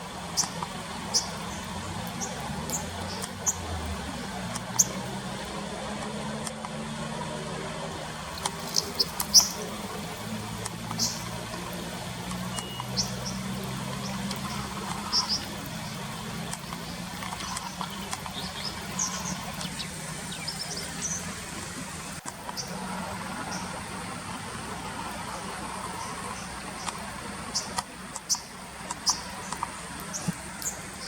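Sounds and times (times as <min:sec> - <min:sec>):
faint low engine hum: 0:00.0 - 0:31.0
stream water running: 0:00.0 - 0:31.0
bird chirps: 0:08.5 - 0:09.9, 0:10.9 - 0:11.3, 0:12.4 - 0:21.3.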